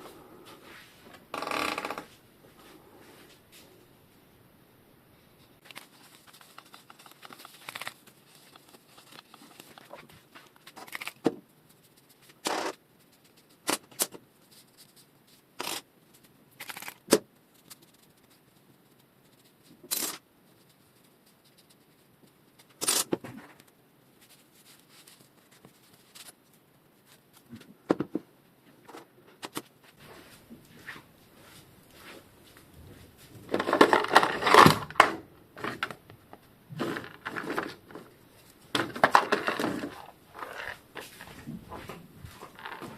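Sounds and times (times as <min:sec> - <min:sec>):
scraping and rustling: 0:28.8 - 0:36.0, 0:36.7 - 0:42.9.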